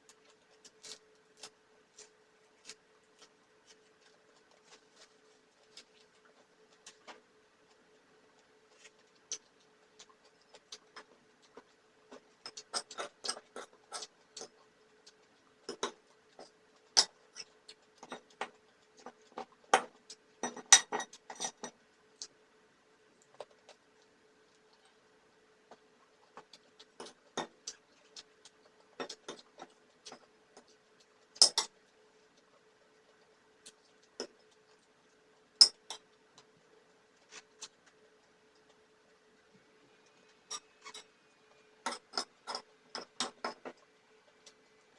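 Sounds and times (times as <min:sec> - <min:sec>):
faint steady hum: 0:00.0 - 0:44.9
cutlery clinking against plates: 0:12.4 - 0:14.6, 0:19.8 - 0:21.8, 0:31.4 - 0:31.8, 0:35.6 - 0:36.1, 0:41.8 - 0:43.8.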